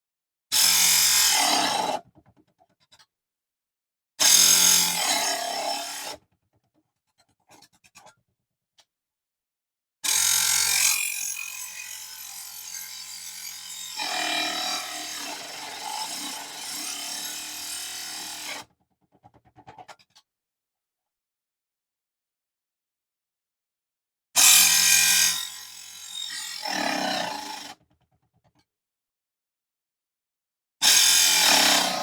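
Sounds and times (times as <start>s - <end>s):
table saw cutting metal: 0.6s - 2.0s, 4.2s - 6.2s, 10.1s - 18.7s, 24.4s - 27.8s, 30.8s - 32.0s.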